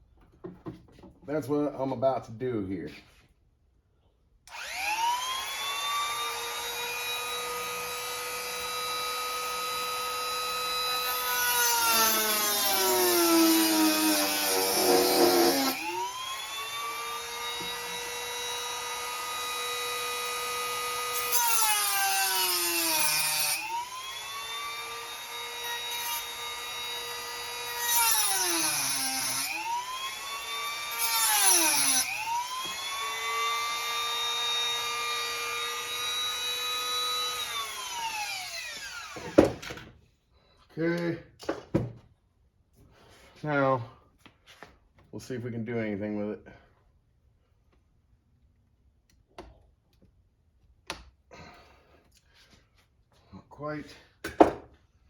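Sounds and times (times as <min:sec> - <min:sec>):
rotary tool grinding screw: 0:04.5 - 0:39.3
rotary tool motor whine: 0:04.5 - 0:39.4.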